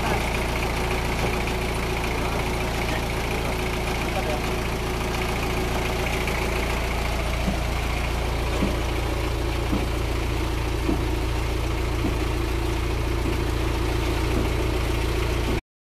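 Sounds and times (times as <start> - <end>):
engine running steadily: 0.0 - 15.6
light repeating knock: 8.5 - 10.1, 10.8 - 11.3.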